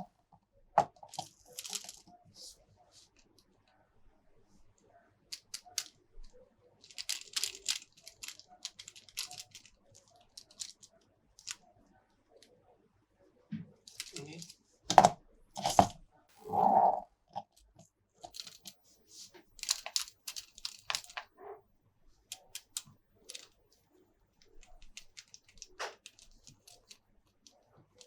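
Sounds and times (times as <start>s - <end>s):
toy packaging crackling and tearing: 1.0s - 2.0s, 6.8s - 10.8s, 13.9s - 15.8s, 19.6s - 21.2s, 22.3s - 23.6s.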